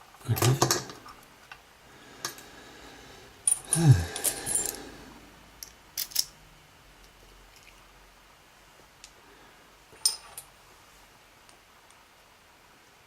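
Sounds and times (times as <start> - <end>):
metal lock parts clicking: 5.6 - 6.3.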